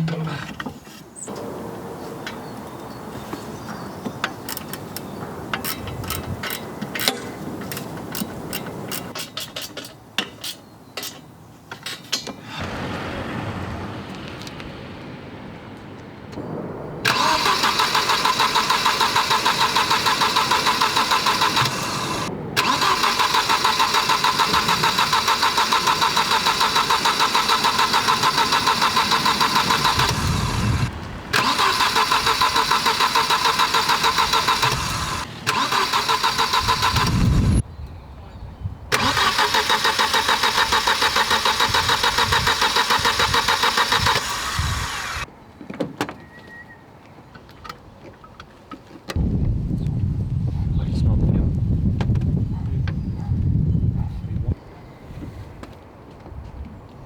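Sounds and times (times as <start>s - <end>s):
engine cranked by starter motor: 12.5s - 15.5s, 17.0s - 37.6s, 38.9s - 45.3s.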